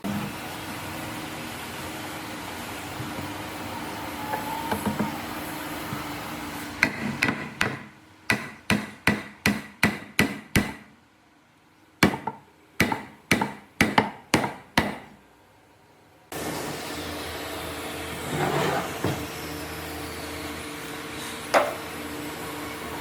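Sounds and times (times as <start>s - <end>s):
steady machine hum: 0.0s - 23.0s
hammer strikes: 6.8s - 10.9s, 12.0s - 15.2s.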